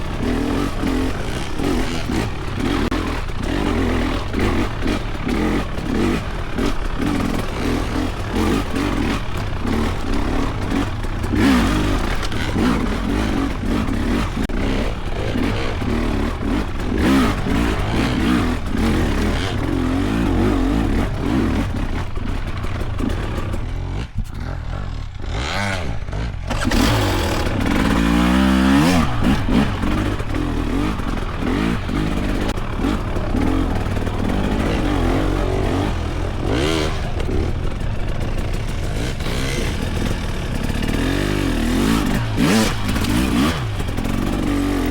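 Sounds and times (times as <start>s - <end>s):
dirt bike engine revving: 0.0s - 44.9s.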